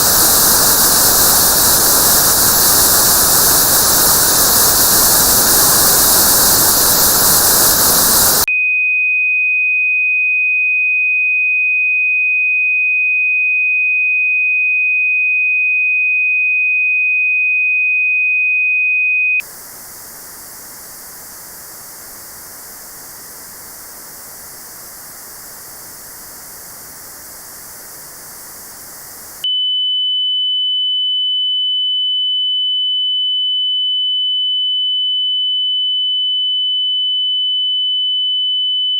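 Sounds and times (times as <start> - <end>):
notched white noise: 0.0 - 8.5, 19.4 - 29.5
steady high pure tone: 0.0 - 8.5, 19.4 - 29.6.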